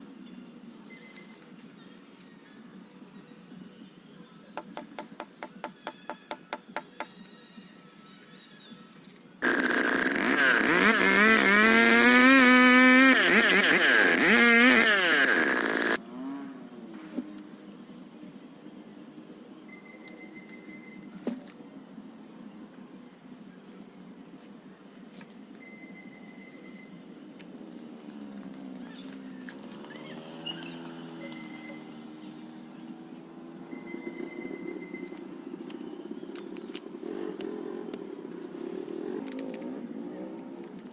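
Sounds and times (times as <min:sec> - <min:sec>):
chainsaw revving: 0:09.4 - 0:16.3.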